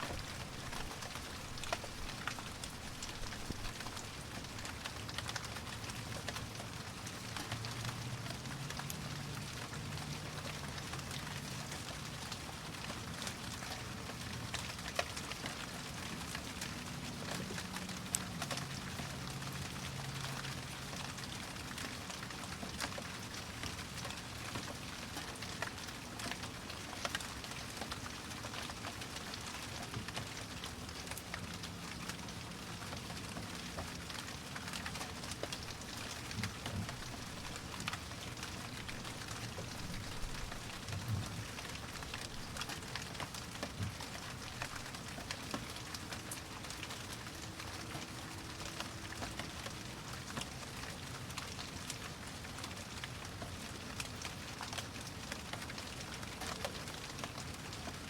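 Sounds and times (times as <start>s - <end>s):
raindrops ticking: 0.0s - 58.0s
steady rain hiss: 0.0s - 58.0s.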